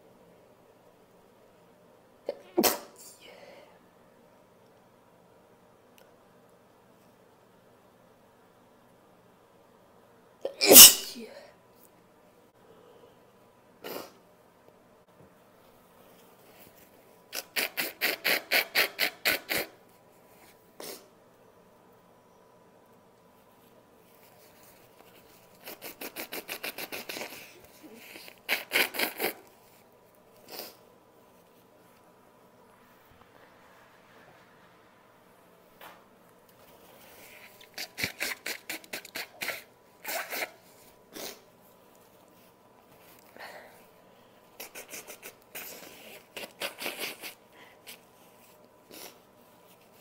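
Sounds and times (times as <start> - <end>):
person blowing their nose: 10.6 - 11.2, 13.8 - 14.2, 17.3 - 19.8, 25.5 - 29.5, 30.4 - 30.8, 37.1 - 41.5, 44.6 - 48.1, 48.9 - 49.3.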